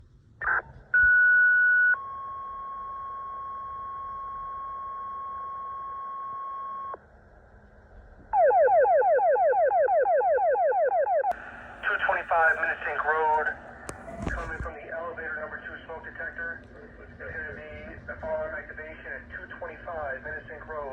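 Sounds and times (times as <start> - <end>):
radio chirp: 9.6 - 17.8
radio click: 11.2 - 14.7.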